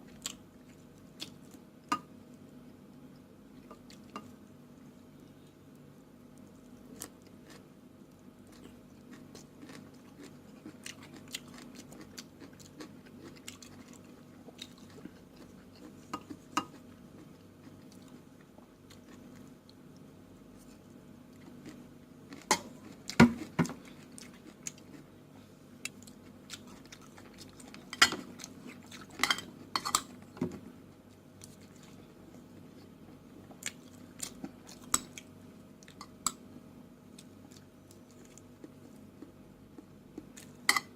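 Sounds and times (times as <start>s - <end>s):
steady low hum: 0.0s - 40.9s
person chewing: 8.4s - 20.0s, 20.6s - 25.1s, 25.8s - 30.1s, 31.4s - 36.4s.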